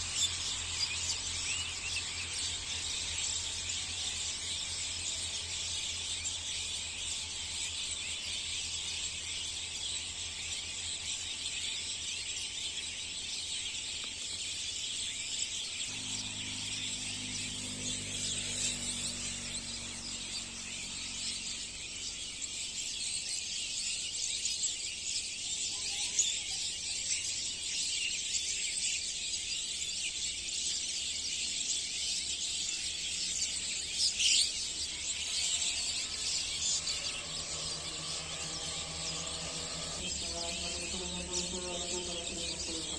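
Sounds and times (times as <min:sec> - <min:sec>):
small birds chirping chorus: 0:00.0 - 0:42.9
faint low drone: 0:34.6 - 0:42.9.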